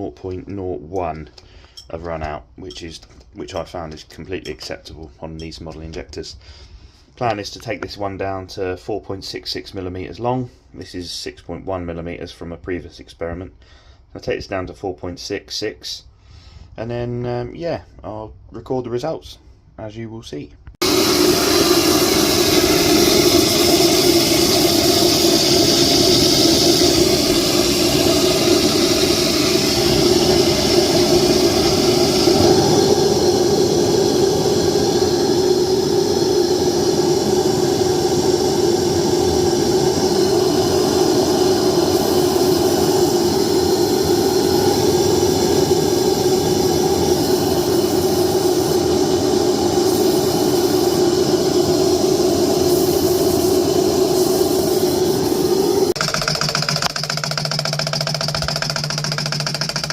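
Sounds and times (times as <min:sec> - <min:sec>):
small lathe cutting metal: 0:20.8 - 0:36.9.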